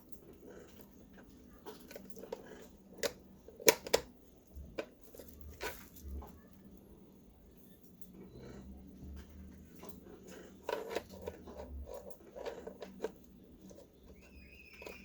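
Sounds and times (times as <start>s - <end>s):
plastic parts clicking and knocking: 0.7s - 6.3s.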